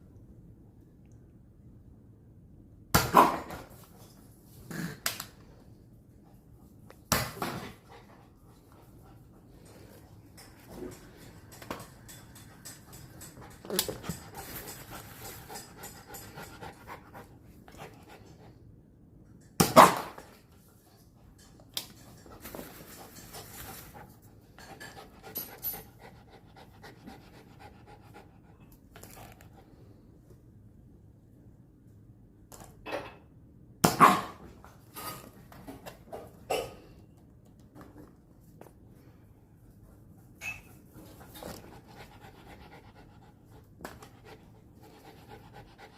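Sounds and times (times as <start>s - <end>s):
dog panting: 13.0s - 18.5s, 22.9s - 28.8s, 41.2s - 45.9s.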